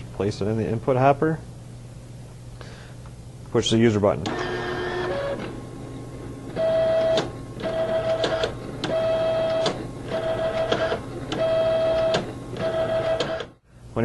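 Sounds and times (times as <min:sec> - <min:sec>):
card printer motor whine: 0:04.2 - 0:13.6
printer clicks: 0:06.9 - 0:13.5.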